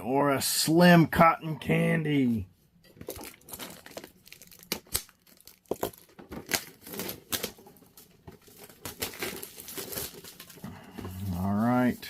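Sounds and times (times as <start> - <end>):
crinkling rustles: 2.8 - 12.0
packaging tearing: 3.0 - 10.6.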